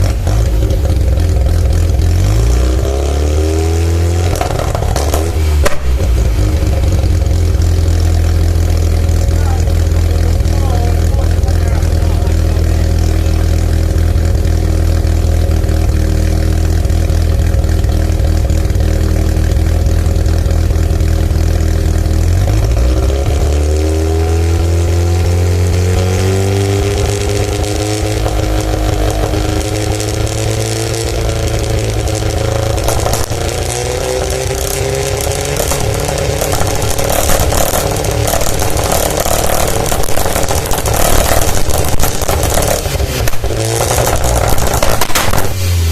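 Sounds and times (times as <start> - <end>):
engine misfire pops: 4.2 - 7.6, 32.7 - 45.9
rotary engine running: 26.8 - 45.9.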